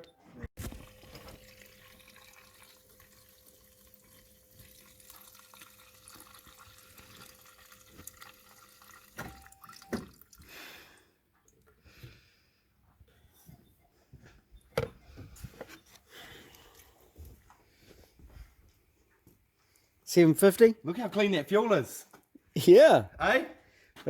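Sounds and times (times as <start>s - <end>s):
fuel pump humming: 0.6s - 10.4s
fuel running into container: 0.6s - 10.6s.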